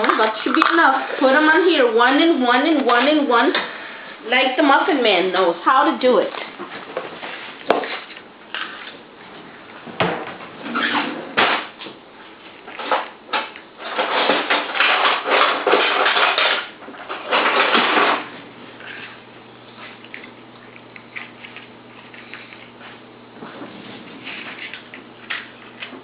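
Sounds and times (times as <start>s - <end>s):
scraping and rattling in a bowl: 0.0s - 1.5s, 12.4s - 19.2s, 23.7s - 26.0s.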